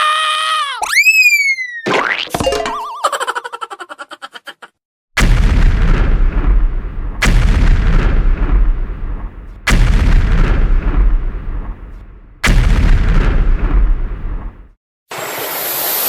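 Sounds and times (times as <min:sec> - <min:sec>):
loud booming blasts: 0:05.2 - 0:14.8.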